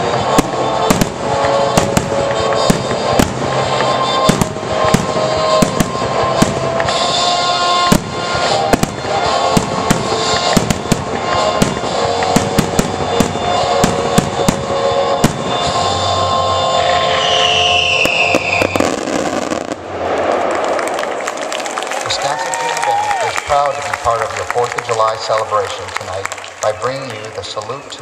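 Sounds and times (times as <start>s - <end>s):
music playing: 0.0s - 20.0s
fireworks bangs and crackles: 0.0s - 28.0s.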